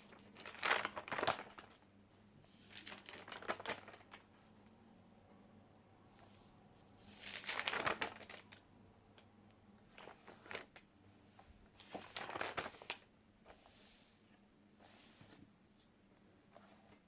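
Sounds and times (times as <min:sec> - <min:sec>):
crinkling handling noise: 0:00.0 - 0:04.8, 0:07.0 - 0:08.6, 0:09.2 - 0:13.8.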